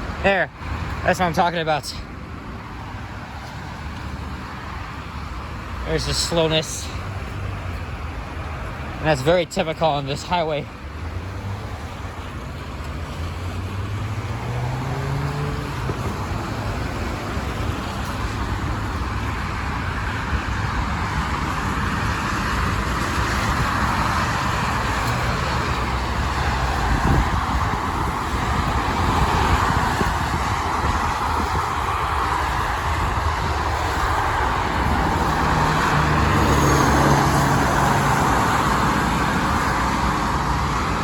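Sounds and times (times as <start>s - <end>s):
tyres hissing on wet road: 10.0s - 41.0s
vehicle engine speeding up: 13.2s - 17.7s, 21.1s - 41.0s.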